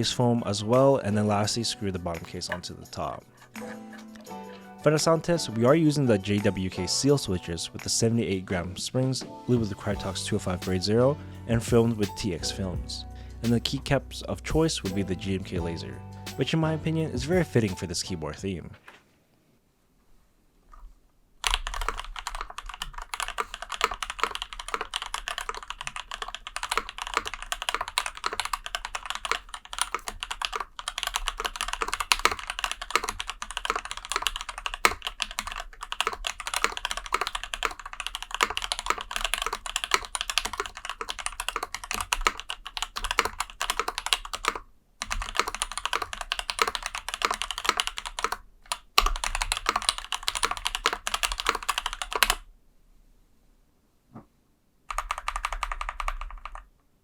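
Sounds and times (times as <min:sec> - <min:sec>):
mechanical keyboard typing: 0:21.4 - 0:52.4, 0:54.9 - 0:56.7.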